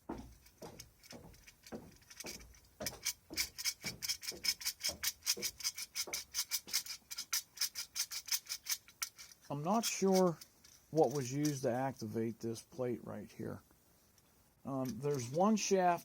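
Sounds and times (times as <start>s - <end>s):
toy tin mechanism clicking scrapes: 2.9s - 11.7s.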